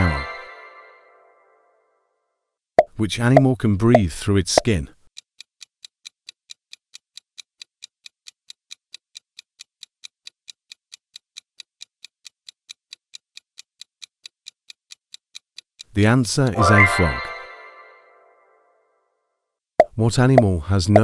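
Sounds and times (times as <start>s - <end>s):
clock ticking quickly: 2.8s - 16.6s, 19.8s - 21.0s.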